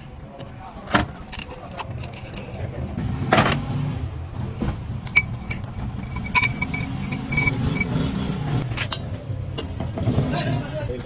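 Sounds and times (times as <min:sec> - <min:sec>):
tools clinking on metal: 0:01.1 - 0:02.6, 0:05.1 - 0:08.2
low hum: 0:04.8 - 0:08.6
small metal part ringing: 0:05.1 - 0:08.1.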